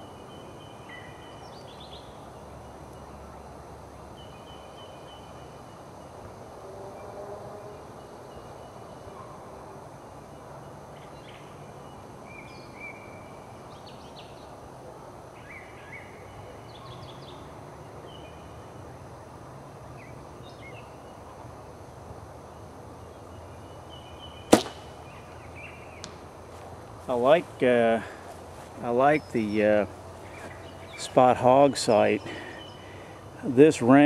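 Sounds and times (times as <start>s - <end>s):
outdoor background noise: 0.0s - 34.0s
sharp crack of a bow shot: 24.5s - 25.1s.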